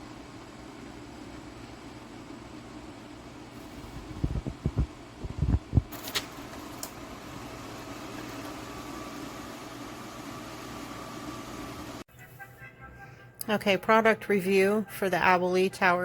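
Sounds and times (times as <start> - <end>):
electric fan whooshing: 0.0 - 12.1.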